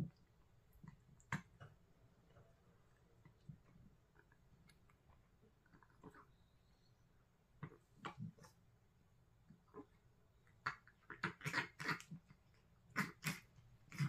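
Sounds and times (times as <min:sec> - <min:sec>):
cat snorting through nose: 0:10.6 - 0:12.3, 0:12.9 - 0:14.0.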